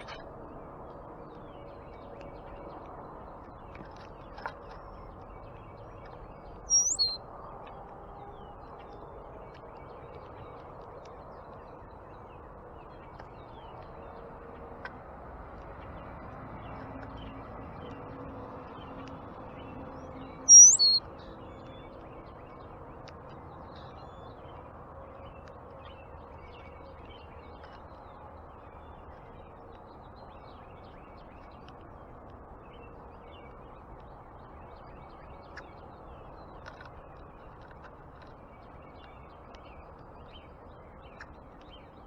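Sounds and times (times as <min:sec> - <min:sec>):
bird call: 0:06.7 - 0:07.2, 0:20.5 - 0:21.0
faint bird chirps: 0:06.7 - 0:07.2, 0:20.5 - 0:21.0.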